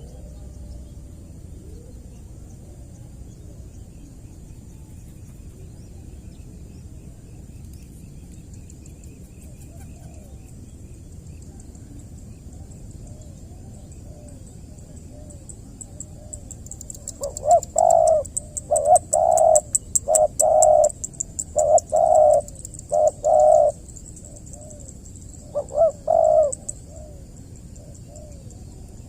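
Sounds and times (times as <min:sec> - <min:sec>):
faint background dove cooing: 0:00.0 - 0:07.5, 0:09.1 - 0:29.0
dove cooing: 0:09.4 - 0:10.4, 0:13.0 - 0:29.0.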